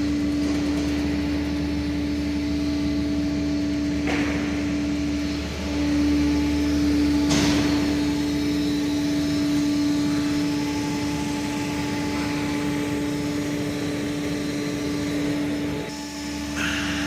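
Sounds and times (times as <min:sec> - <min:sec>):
machine drone with hum: 0:00.0 - 0:17.0.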